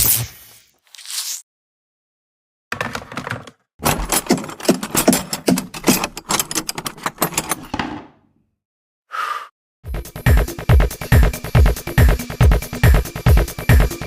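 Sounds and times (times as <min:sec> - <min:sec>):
rapid clattering and rattling: 0:02.8 - 0:07.8.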